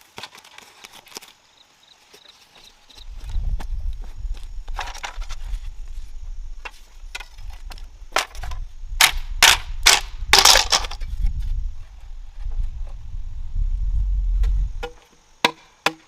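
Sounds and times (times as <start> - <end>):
steady low rumble: 11.0 - 14.8.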